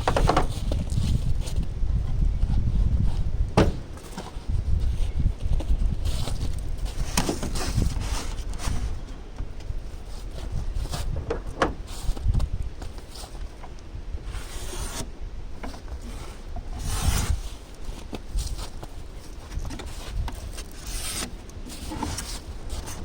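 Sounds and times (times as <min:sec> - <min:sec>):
foam board scraping and rubbing: 0:00.0 - 0:09.0, 0:14.2 - 0:15.1, 0:15.7 - 0:23.0.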